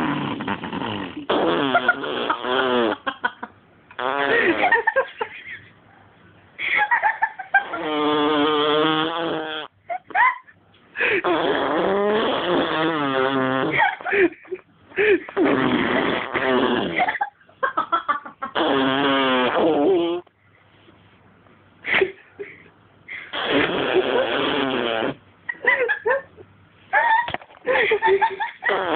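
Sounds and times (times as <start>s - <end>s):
baby blowing raspberries: 0.0s - 3.0s, 11.2s - 13.8s, 15.4s - 17.0s, 23.3s - 25.2s.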